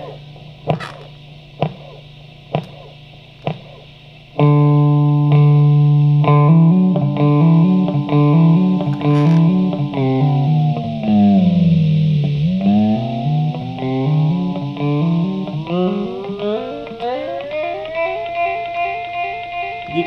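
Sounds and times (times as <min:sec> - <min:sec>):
sustained guitar tone alternating pitches: 0:04.4 - 0:20.0.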